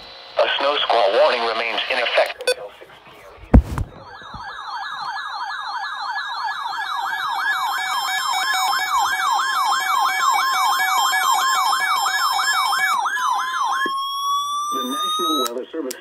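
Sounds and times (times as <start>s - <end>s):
electronic warbling siren: 3.1s - 15.6s.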